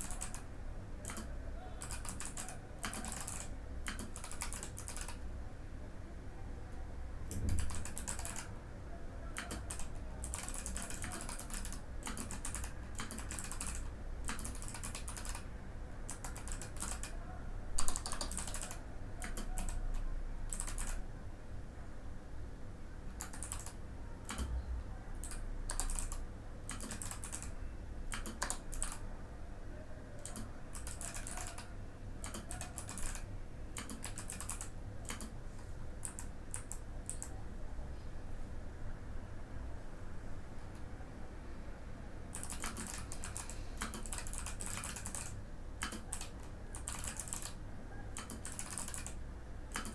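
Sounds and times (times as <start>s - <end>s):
mechanical keyboard typing: 0.0s - 5.2s, 7.3s - 8.5s, 9.4s - 15.5s, 16.1s - 17.2s, 17.8s - 21.0s, 23.1s - 24.6s, 25.2s - 29.0s, 30.2s - 35.4s, 36.0s - 37.4s, 42.3s - 47.6s, 48.2s - 49.9s.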